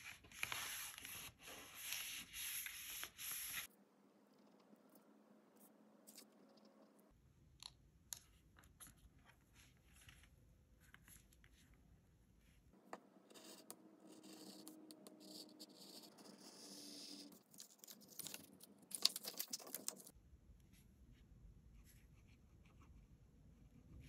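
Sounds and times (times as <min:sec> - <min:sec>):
paper scratching and rustling: 0:14.2 - 0:20.1.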